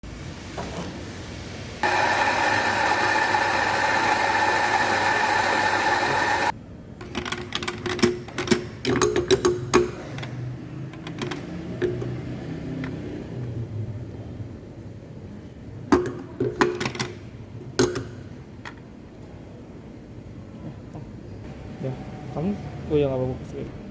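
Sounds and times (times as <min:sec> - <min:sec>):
espresso machine whirring: 0:01.8 - 0:06.6.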